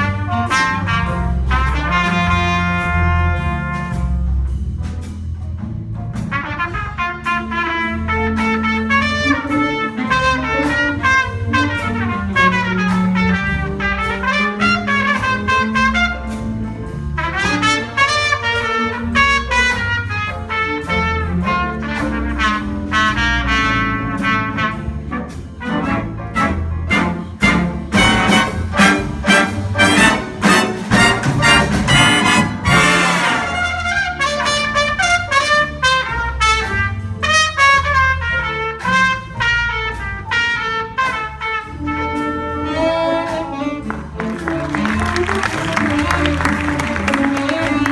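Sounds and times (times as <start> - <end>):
brass section playing chords: 6.3 - 47.9
drum beat: 25.5 - 37.0, 43.8 - 47.9.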